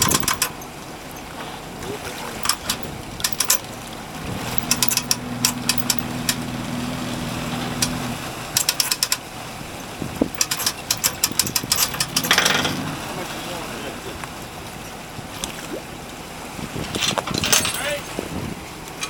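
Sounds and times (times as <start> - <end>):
winch ratchet clicking: 0.0 - 1.2, 2.4 - 3.7, 4.5 - 6.4, 8.6 - 9.2, 10.3 - 12.8
engine running steadily: 0.0 - 19.0.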